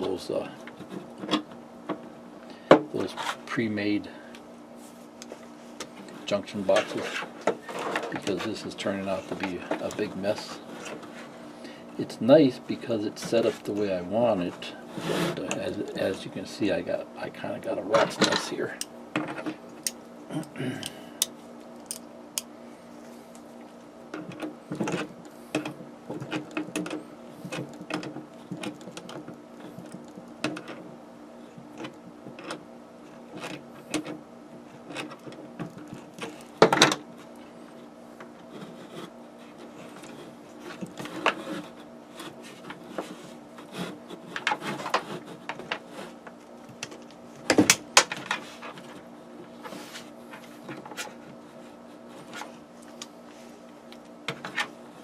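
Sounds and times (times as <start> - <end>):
steady background hum: 0.0 - 55.0
clicks and rustles of wires: 4.3 - 16.5, 17.4 - 55.0.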